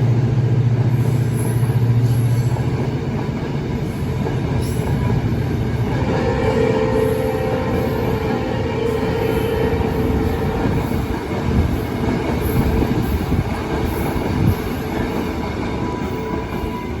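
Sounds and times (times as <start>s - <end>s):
train wheels rumbling on rail: 0.0s - 17.0s.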